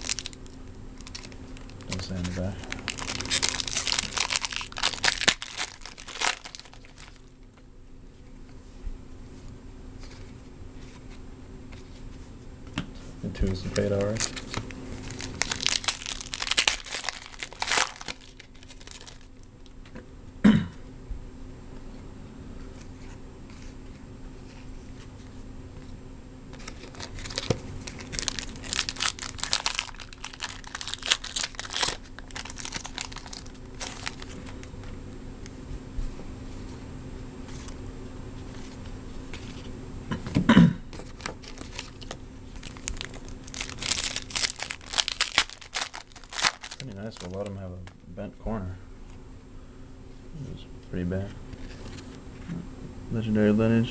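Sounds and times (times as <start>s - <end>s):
cards rustling: 0.0s - 7.3s, 13.4s - 19.4s, 26.5s - 34.8s, 38.4s - 39.7s, 40.9s - 48.0s
wrapper crinkling and tearing: 0.0s - 7.4s, 13.4s - 19.8s, 26.5s - 34.8s, 40.9s - 48.0s
person coughing: 20.4s - 20.8s, 40.1s - 40.9s.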